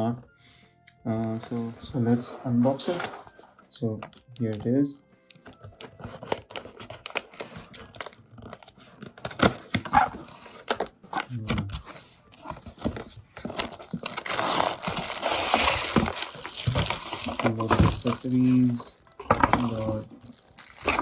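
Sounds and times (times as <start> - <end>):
plastic wrapping crinkling: 5.4 - 11.5, 12.3 - 21.0
cardboard clicks and knocks: 5.4 - 21.0.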